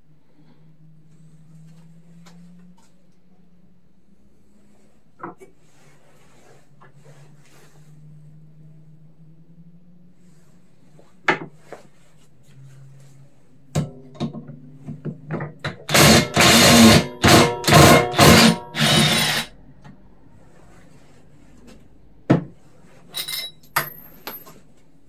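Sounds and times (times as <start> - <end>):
electric drill-driver bursts: 15.9 - 19.5.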